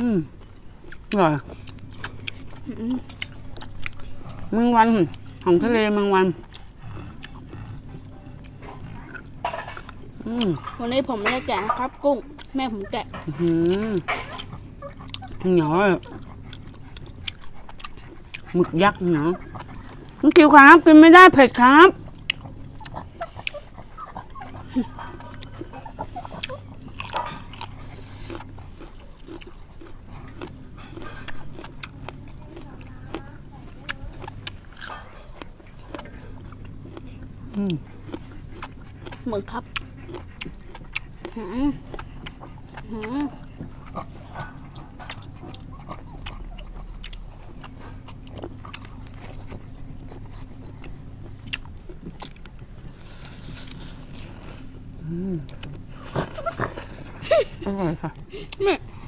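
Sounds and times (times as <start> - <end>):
steady low hum: 0.0 - 59.0
close-up chewing and biting: 0.3 - 59.0
dog whining: 22.5 - 28.3.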